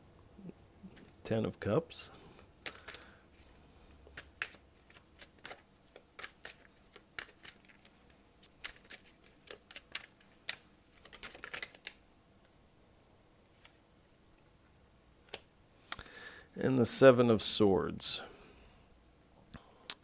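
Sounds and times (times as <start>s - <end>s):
cards snapping and flicking: 2.5s - 3.1s, 4.1s - 12.0s.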